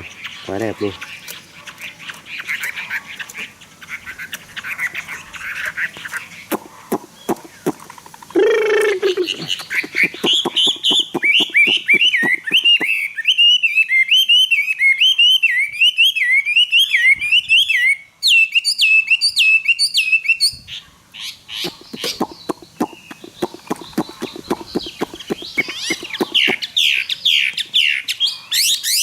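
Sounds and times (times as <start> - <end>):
bird singing whistled phrases: 8.4 - 20.6, 21.6 - 28.0
harsh buzzy bird note: 21.6 - 26.6.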